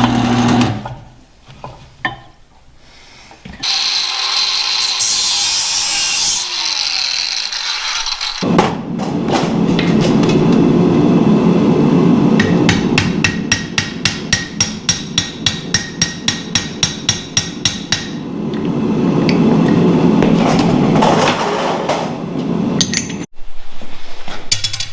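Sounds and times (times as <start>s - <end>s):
power tool winding down: 3.6s - 8.5s
hammer striking steel: 12.4s - 18.2s.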